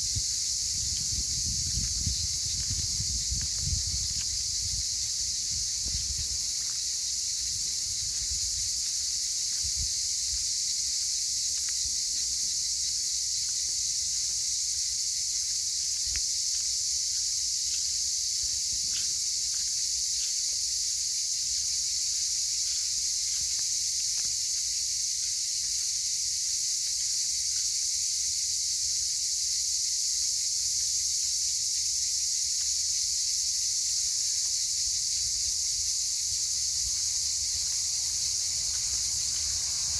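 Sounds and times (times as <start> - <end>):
wind rumble on microphone: 0.0 - 10.6
cicadas buzzing: 0.0 - 39.9.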